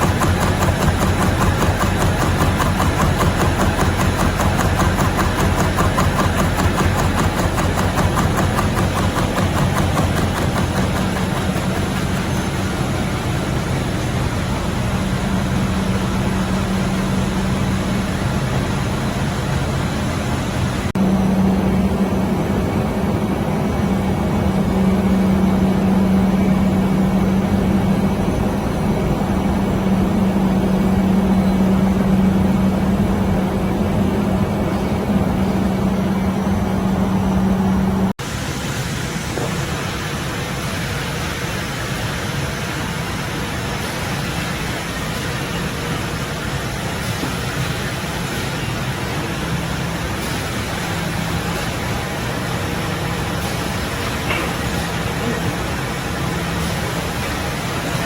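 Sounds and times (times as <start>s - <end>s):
deeper machine hum: 0.0s - 40.8s
machinery humming rhythmically: 0.0s - 58.0s.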